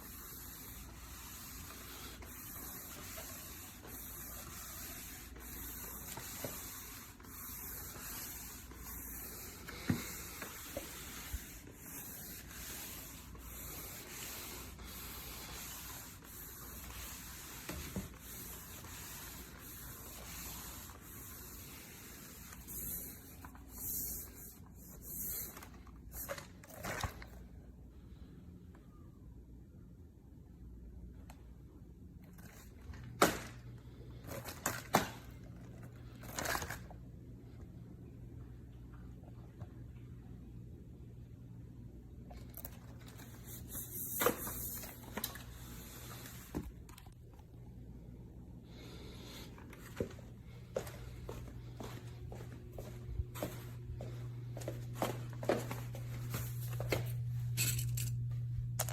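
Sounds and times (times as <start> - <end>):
vacuum mop running: 0.0 - 24.0.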